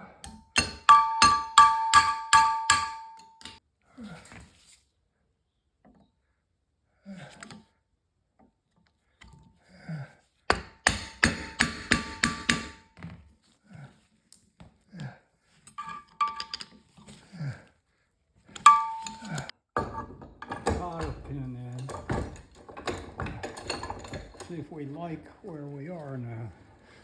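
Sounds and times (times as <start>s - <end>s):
hammer striking metal: 0.2s - 3.6s, 10.5s - 12.8s, 18.6s - 24.5s.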